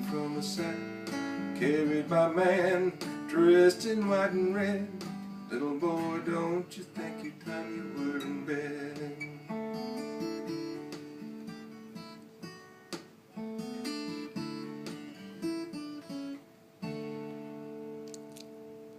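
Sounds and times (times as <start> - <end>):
acoustic guitar strummed and picked: 0.0 - 18.9.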